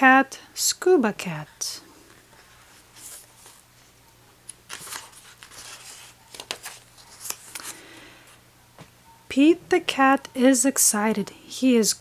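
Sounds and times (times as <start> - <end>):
paper rustling: 2.1 - 3.9, 4.5 - 8.1.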